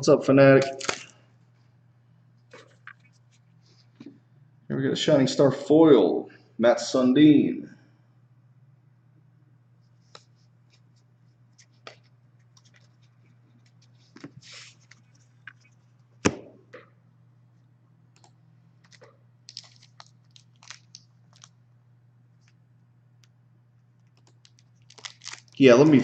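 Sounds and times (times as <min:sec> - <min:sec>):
steady low hum: 0:00.0 - 0:26.0
trading cards clicking and rustling: 0:11.6 - 0:16.9, 0:18.2 - 0:21.5, 0:24.1 - 0:25.7.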